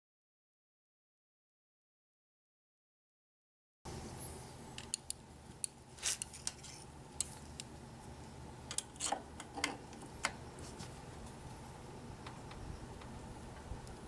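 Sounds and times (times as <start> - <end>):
steady low hum: 3.9 - 14.0.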